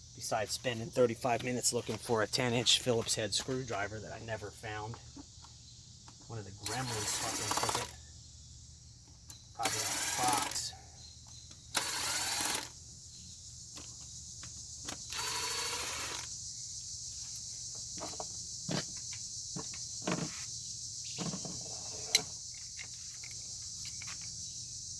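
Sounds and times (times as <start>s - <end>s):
crickets chirping: 0.0s - 24.9s
hand tools clinking and knocking: 6.1s - 8.0s, 9.1s - 12.7s.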